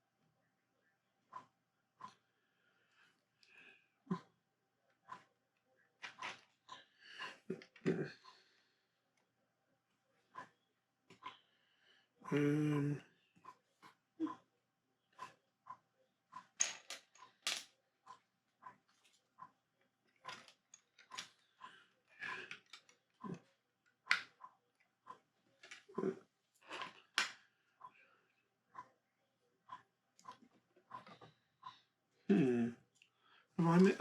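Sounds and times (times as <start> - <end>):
plastic pieces clicking together: 16.4 - 17.7, 20.1 - 21.4, 22.3 - 23.0.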